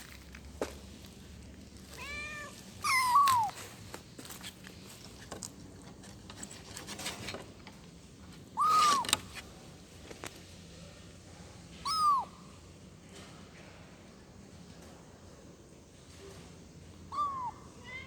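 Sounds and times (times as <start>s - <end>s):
kitten meowing: 2.0s - 3.5s, 8.6s - 9.0s, 11.8s - 12.3s, 17.1s - 18.0s.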